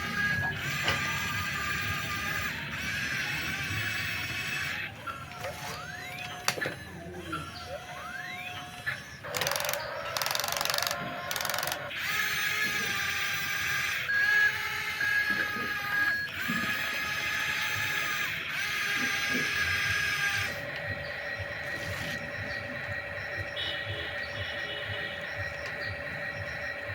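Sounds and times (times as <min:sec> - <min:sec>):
small electric motors whining: 0:00.0 - 0:26.9.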